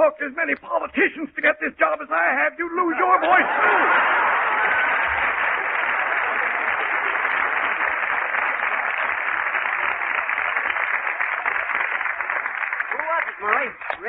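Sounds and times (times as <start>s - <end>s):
audience laughing and applauding: 2.8s - 14.0s.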